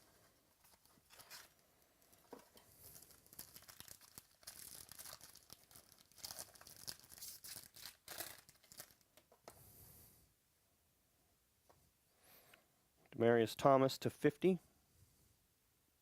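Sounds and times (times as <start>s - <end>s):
packaging torn and crinkled: 2.8s - 9.2s.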